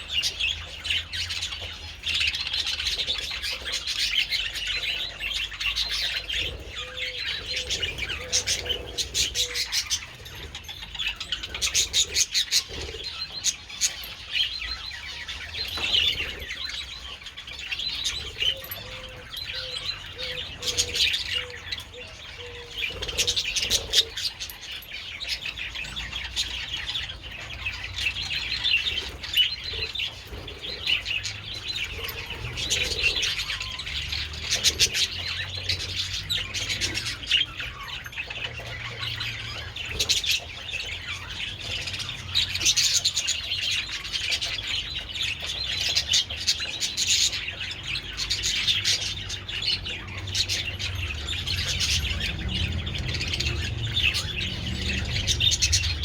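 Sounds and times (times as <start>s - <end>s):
budgerigars chattering: 0.0s - 56.0s.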